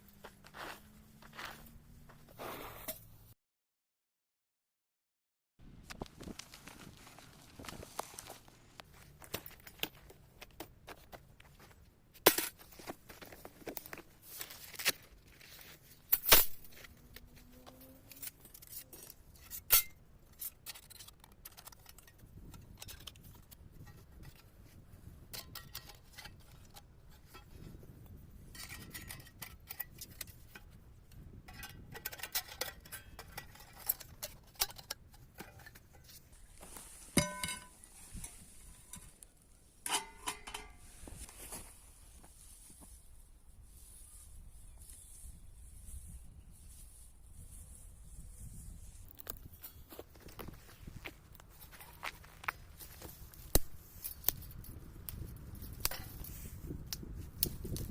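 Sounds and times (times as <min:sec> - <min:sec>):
clinks of objects being handled: 0:16.0 - 0:24.5, 0:31.4 - 0:41.2.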